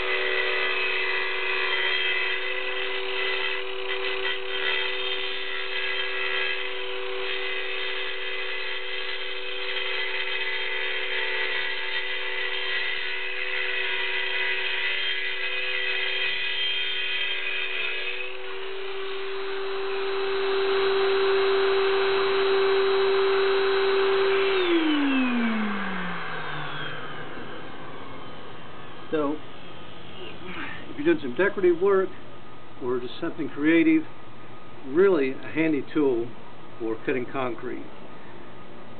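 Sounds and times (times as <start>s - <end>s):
saw motor winding down: 0.0s - 31.7s
circular saw cutting concrete: 0.0s - 32.1s.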